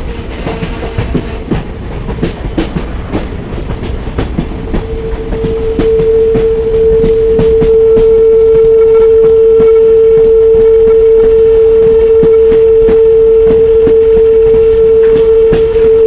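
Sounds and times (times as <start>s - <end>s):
train wheels clacking on rails: 0.0s - 16.0s
train horn long note: 4.7s - 16.0s.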